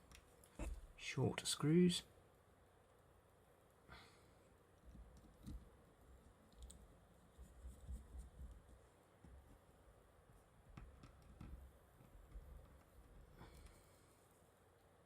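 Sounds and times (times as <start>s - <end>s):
small clicks and soft knocks: 4.8s - 8.6s, 10.3s - 13.8s.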